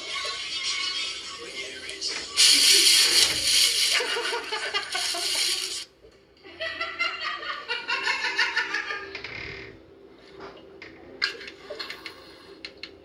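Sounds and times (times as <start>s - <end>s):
person laughing: 3.8s - 5.8s.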